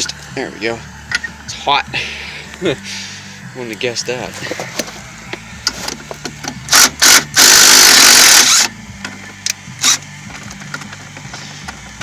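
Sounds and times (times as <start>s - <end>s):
impact wrench hammering: 4.5s - 9.2s.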